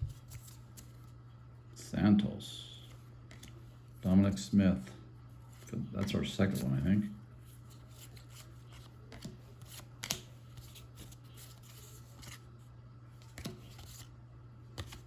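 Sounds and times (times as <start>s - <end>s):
faint low hum: 0.0s - 15.0s
cards flicking and sliding: 7.7s - 12.4s, 13.2s - 14.1s, 14.7s - 15.0s.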